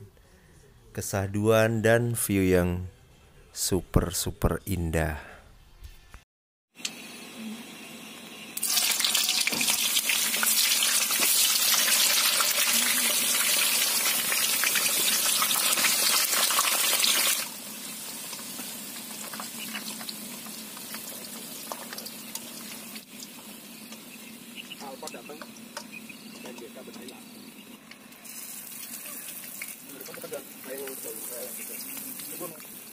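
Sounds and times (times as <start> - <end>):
rain drips: 27.8 - 32.9
heavy rain hissing: 28.2 - 32.9.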